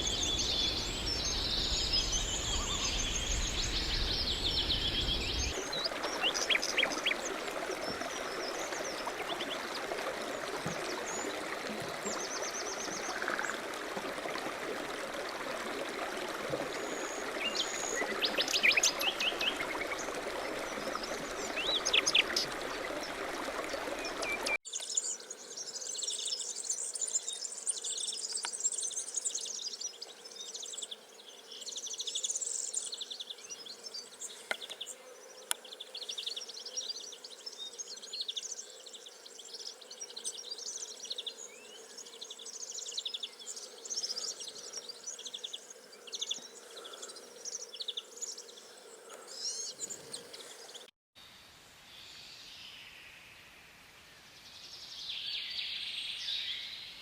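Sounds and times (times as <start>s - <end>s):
bird chirps: 0.0s - 7.2s
insects chirping: 0.0s - 10.3s.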